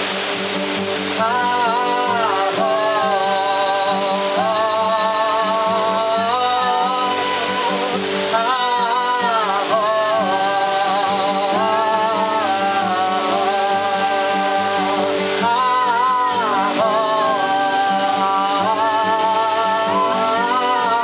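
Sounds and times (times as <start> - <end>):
low sustained tones: 0.0 - 21.0
person singing with vibrato: 0.0 - 21.0
waterfall rushing: 0.0 - 21.0.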